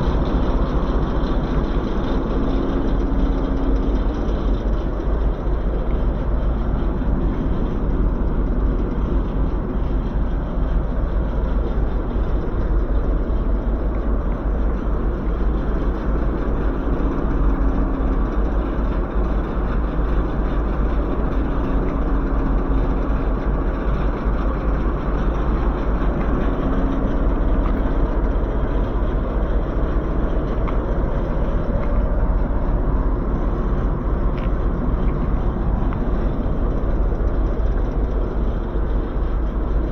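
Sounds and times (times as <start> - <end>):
railway vehicle rumbling: 0.0 - 39.9.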